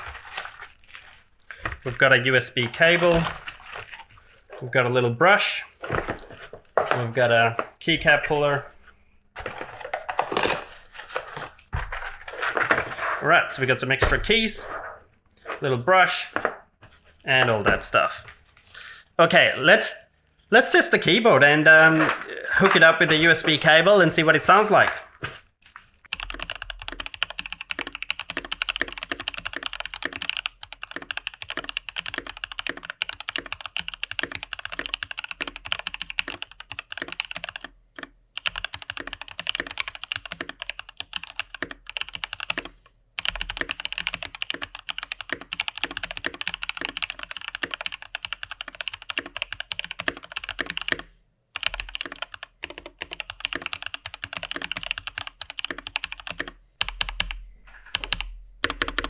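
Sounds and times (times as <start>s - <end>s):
mechanical keyboard typing: 26.1s - 59.0s.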